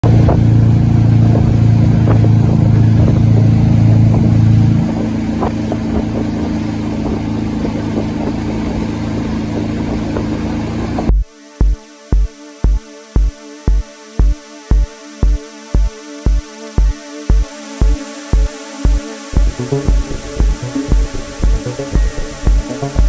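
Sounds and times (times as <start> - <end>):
motorboat engine running: 0.0 - 11.2, 16.3 - 23.0.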